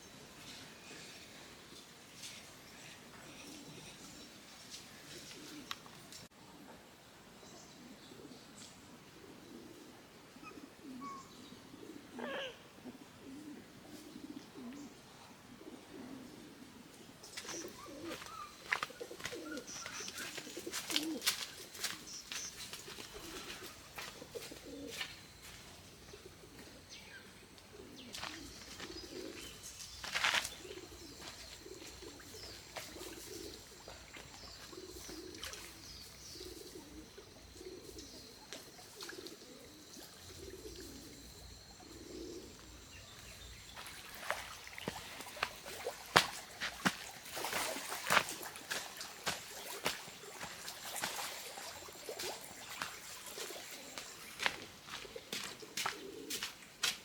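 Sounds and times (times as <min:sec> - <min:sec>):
birds calling in low soft notes: 0:07.6 - 0:45.7.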